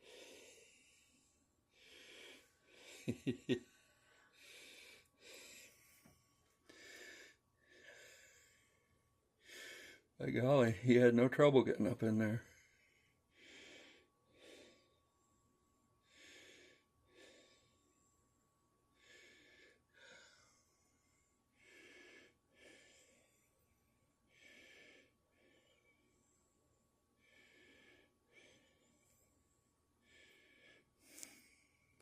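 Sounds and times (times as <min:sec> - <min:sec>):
person breathing heavily: 0:00.0 - 0:10.2, 0:12.4 - 0:15.4, 0:16.0 - 0:32.0.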